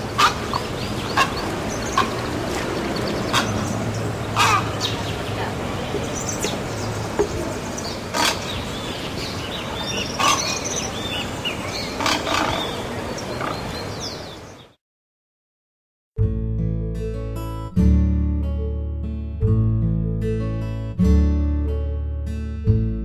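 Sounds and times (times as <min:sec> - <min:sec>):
heron squawking: 0:00.0 - 0:13.7
outdoor background noise: 0:00.0 - 0:14.8.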